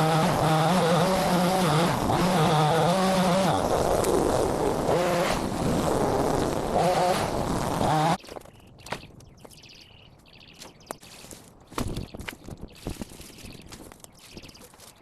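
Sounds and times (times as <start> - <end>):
small petrol engine buzzing: 0.0 - 8.2.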